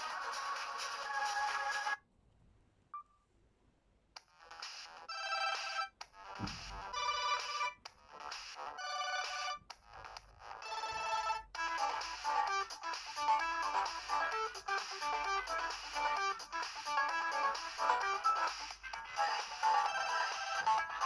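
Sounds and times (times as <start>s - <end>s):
electronic phone ringtone melody: 5.1s - 5.9s, 7.0s - 7.8s, 8.8s - 9.6s, 10.6s - 12.0s, 19.1s - 21.0s.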